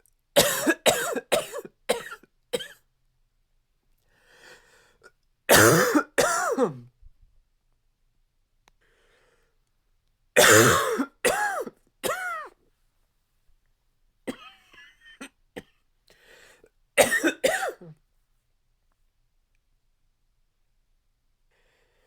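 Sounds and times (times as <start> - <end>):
man coughing: 0.4 - 2.8, 5.5 - 6.9, 10.4 - 12.5, 17.0 - 18.0.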